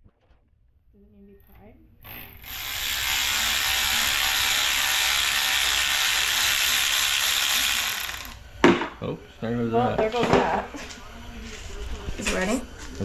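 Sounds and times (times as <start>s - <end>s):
power ratchet running: 2.0s - 8.6s.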